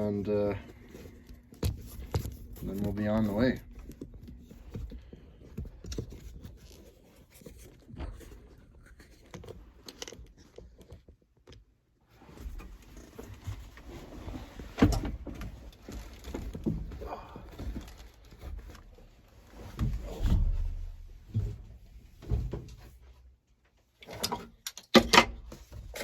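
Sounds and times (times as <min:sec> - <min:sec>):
knocks scrapes and rustling: 0:12.1 - 0:23.2.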